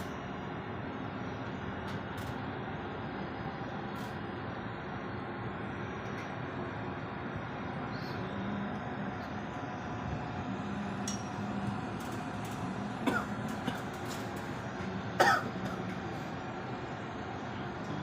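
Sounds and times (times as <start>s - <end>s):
steady background hum: 0.0s - 18.0s
person coughing: 13.0s - 13.9s, 15.2s - 15.9s.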